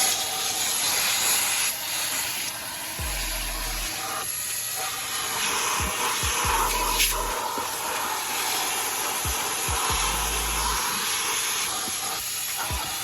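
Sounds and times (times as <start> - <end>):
wet dry vacuum running: 0.0 - 13.0.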